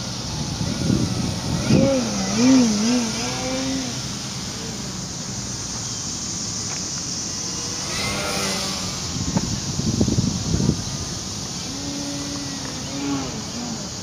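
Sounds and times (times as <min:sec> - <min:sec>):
wind noise on microphone: 0:00.0 - 0:04.7, 0:07.6 - 0:14.0
model plane propeller buzzing: 0:00.0 - 0:05.7, 0:07.2 - 0:14.0.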